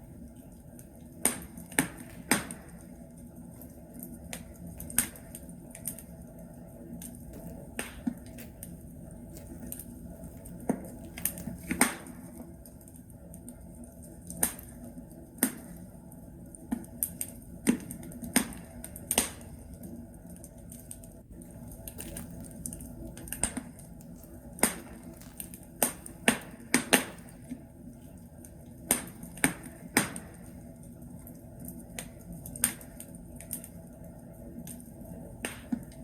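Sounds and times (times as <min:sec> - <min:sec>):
wood fire popping and snapping: 0:00.0 - 0:36.0
steady low hiss: 0:18.6 - 0:35.4.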